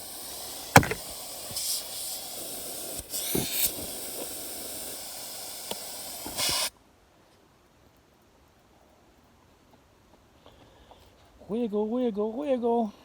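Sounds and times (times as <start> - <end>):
steady hissing noise: 0.0 - 13.0
light knocks: 0.8 - 1.0.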